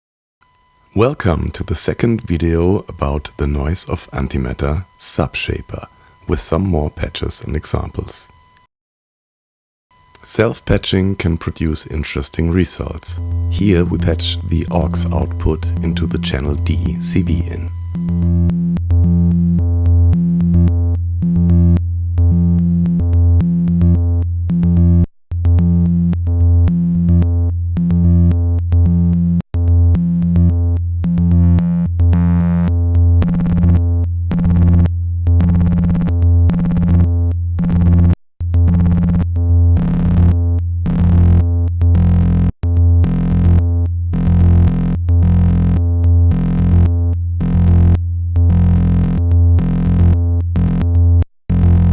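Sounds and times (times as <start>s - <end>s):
low stuttering synth tone: 12.4s - 18.6s.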